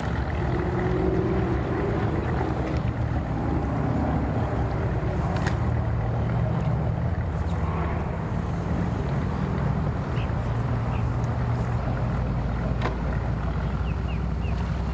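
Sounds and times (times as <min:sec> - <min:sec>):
engines humming: 0:00.0 - 0:14.9
rushing noise: 0:06.8 - 0:10.9.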